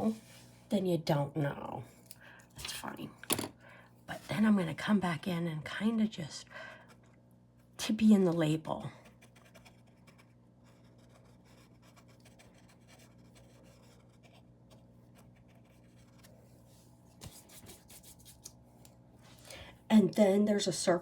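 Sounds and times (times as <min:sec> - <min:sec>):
paintbrush strokes scratching: 0:15.1 - 0:18.5.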